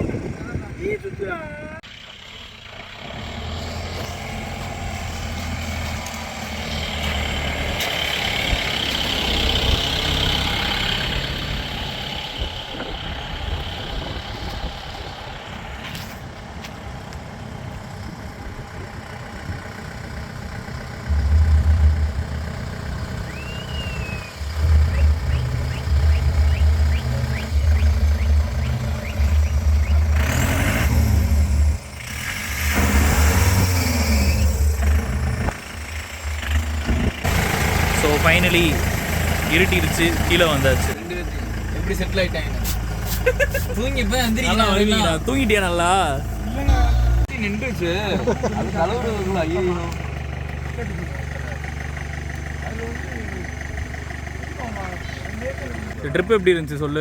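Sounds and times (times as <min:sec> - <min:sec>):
diesel engine driving off-road: 0:00.0 - 0:57.0
loud low rumbling pulses: 0:18.1 - 0:43.0.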